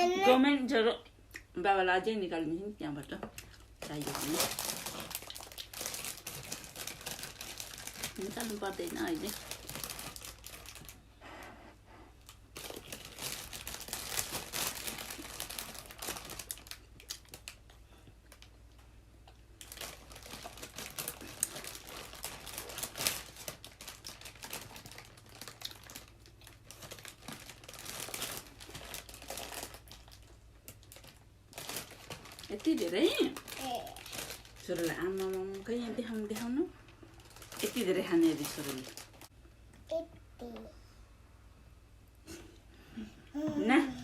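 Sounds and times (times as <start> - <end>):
plastic packaging crinkling: 3.4 - 11.0, 12.3 - 18.6, 19.5 - 39.3.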